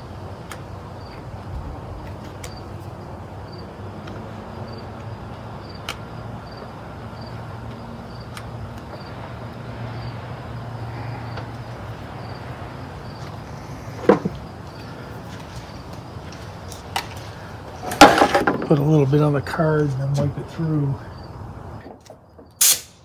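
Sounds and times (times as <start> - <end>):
insect chirping: 0.0 - 1.5, 2.4 - 3.8, 4.5 - 18.0, 20.6 - 23.0.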